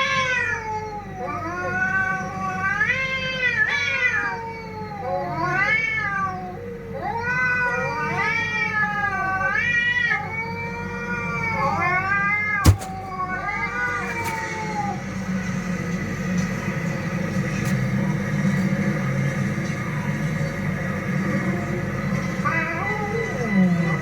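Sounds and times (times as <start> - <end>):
cats meowing and yowling: 0.0 - 15.0, 22.4 - 24.0
steady low hum: 12.6 - 20.1.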